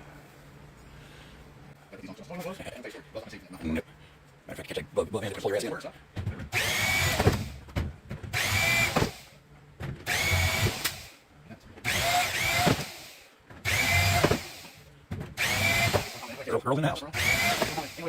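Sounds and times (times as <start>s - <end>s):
power drill whining: 6.5s - 7.6s, 8.3s - 9.3s, 10.1s - 11.1s, 11.8s - 14.8s, 15.4s - 16.5s, 17.1s - 18.0s.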